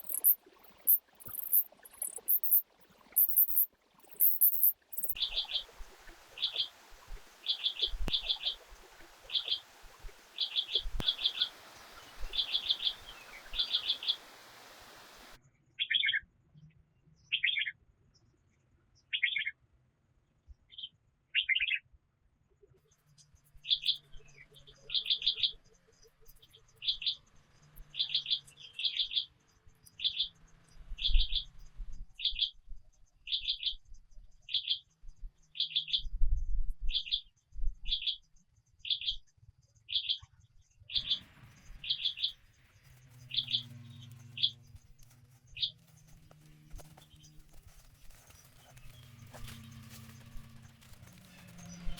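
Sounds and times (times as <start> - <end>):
faint steady hiss: 0.0 - 15.4
bird chirping: 0.0 - 16.2, 22.9 - 30.4, 40.9 - 51.9.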